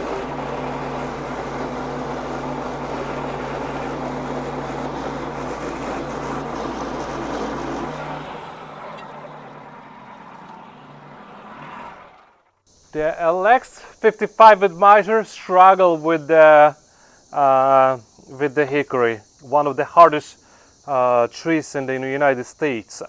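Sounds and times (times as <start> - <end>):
sawmill humming: 0.0 - 15.1.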